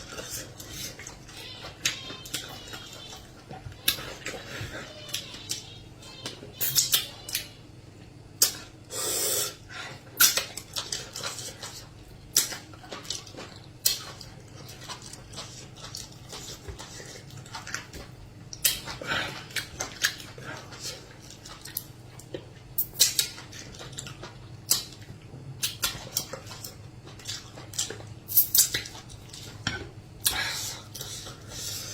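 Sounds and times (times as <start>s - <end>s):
slurping: 8.5s - 11.8s
lip smacks and chewing: 10.1s - 29.6s.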